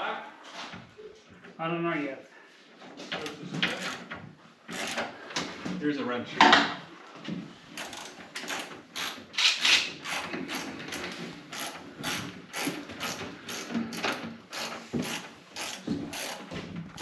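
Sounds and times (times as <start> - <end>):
ratcheting wrench clicking: 4.7 - 5.1, 7.8 - 17.0.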